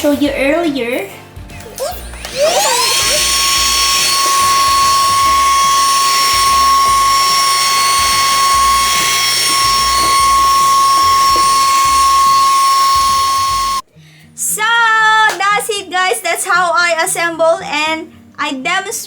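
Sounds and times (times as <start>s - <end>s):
vacuum cleaner motor whine: 2.2s - 13.9s.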